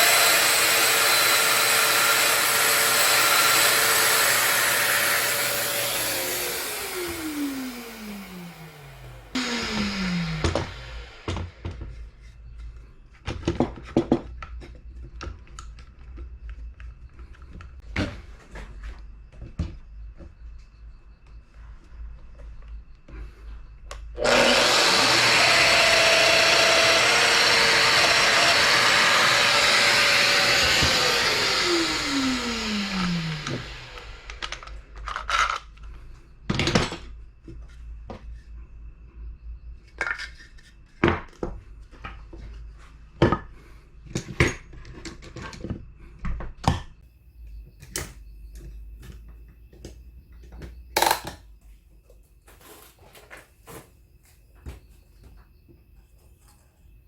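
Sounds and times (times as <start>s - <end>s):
power tool motor whining: 0.0s - 11.8s, 24.2s - 34.7s.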